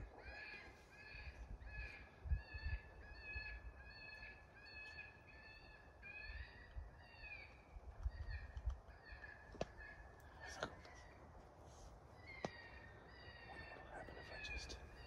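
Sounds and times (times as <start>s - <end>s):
raspy crow-like caws: 0.0s - 7.5s, 12.2s - 15.0s
wind buffeting microphone: 1.2s - 3.8s.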